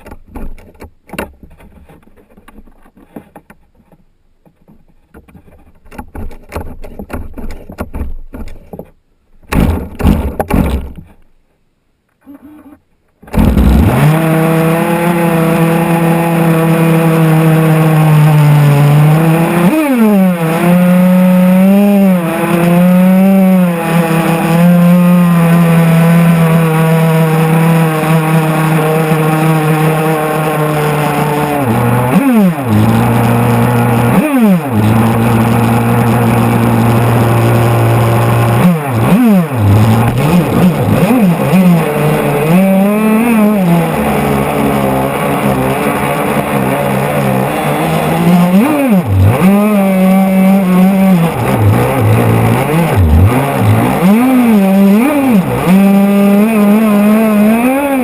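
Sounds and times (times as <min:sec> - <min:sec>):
model boat engine high-pitched: 0:13.3 - 0:58.0.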